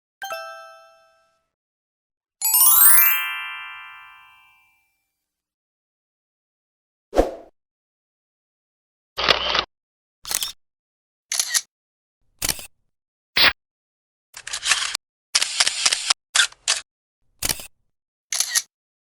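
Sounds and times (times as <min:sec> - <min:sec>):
camera shutter clicks: 0:11.3 - 0:11.6, 0:18.3 - 0:18.7.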